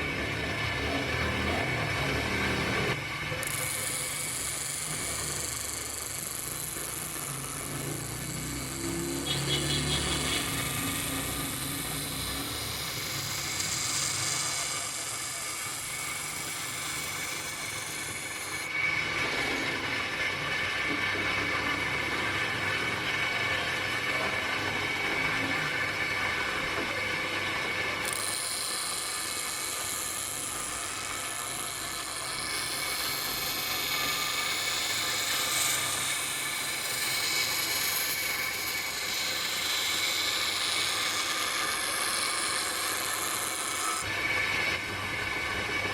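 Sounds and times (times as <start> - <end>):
motor hum: 0.0 - 19.8
abrasive wheel grinding steel: 0.1 - 45.9.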